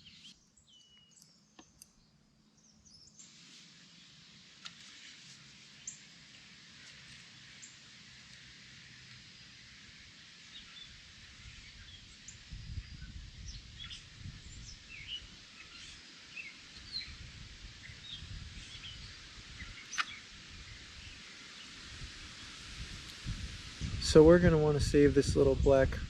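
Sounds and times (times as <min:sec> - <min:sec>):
birds chirping: 0:00.0 - 0:03.3, 0:09.0 - 0:22.6
background hiss: 0:00.0 - 0:26.0.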